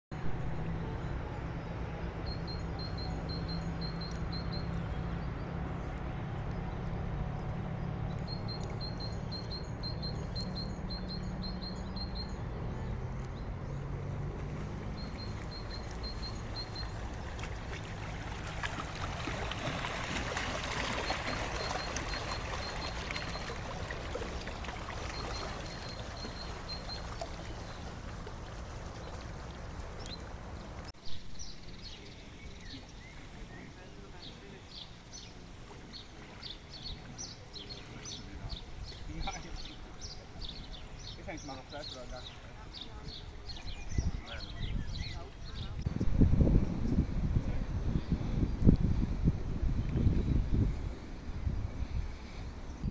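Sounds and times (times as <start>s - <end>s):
low steady hum: 0.2s - 41.2s
river water trickling and splashing: 0.2s - 52.9s
small bird singing: 8.1s - 13.8s, 15.0s - 17.8s.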